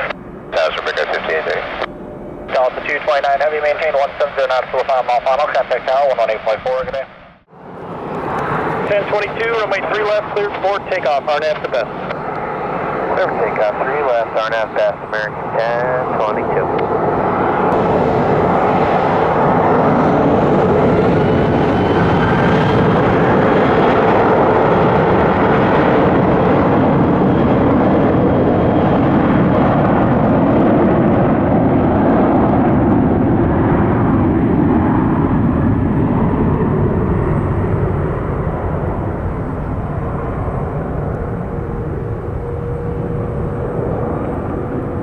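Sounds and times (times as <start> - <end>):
jet engine roar: 0.0 - 45.0
thin whine sliding in pitch: 39.0 - 45.0.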